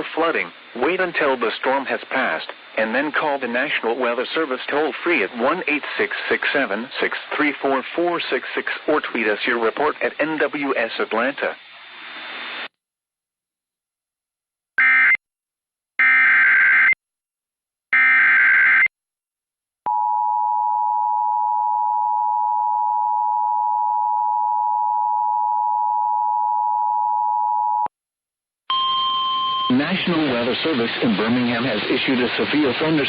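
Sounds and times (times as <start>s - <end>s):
two-tone attention signal: 28.7s - 29.8s.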